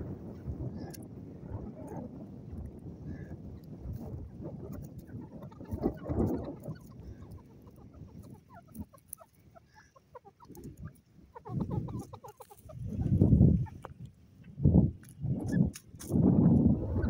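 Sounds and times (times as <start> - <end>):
low-pitched bird calls: 4.6 - 13.9.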